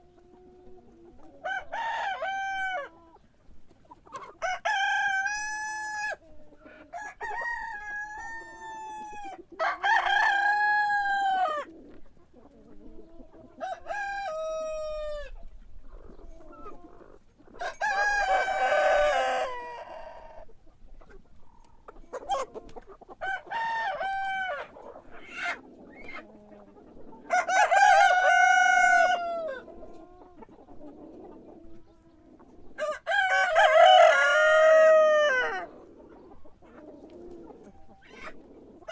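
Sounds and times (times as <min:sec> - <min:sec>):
rooster crowing: 0:09.6 - 0:11.6, 0:17.6 - 0:20.0, 0:27.3 - 0:29.6, 0:32.8 - 0:35.7.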